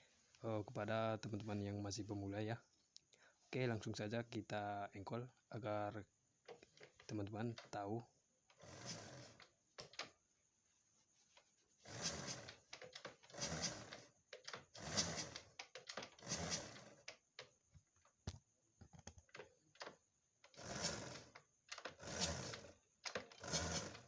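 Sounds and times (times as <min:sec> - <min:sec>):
rattling bursts: 0:08.5 - 0:10.1, 0:11.8 - 0:17.5, 0:19.3 - 0:24.0
motorcycle engine kick-started: 0:11.9 - 0:17.3, 0:20.5 - 0:24.0.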